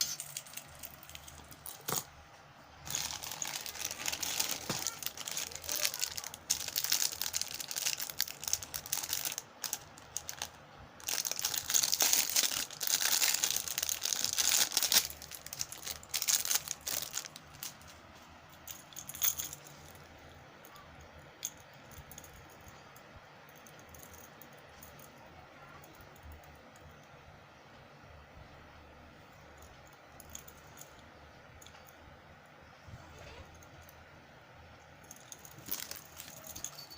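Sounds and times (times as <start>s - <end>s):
plastic packaging crinkling: 2.8s - 18.0s, 35.1s - 36.9s.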